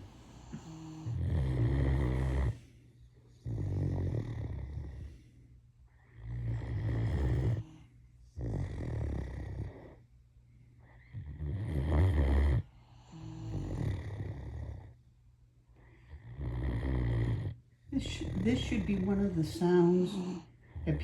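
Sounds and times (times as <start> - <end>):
dog snoring: 0.0 - 5.3, 5.9 - 10.1, 10.8 - 15.1, 15.8 - 21.0.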